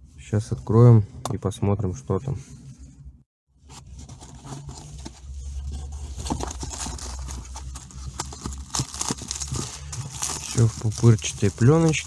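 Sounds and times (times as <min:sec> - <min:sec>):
packaging crinkling and rustling: 0:04.0 - 0:12.0.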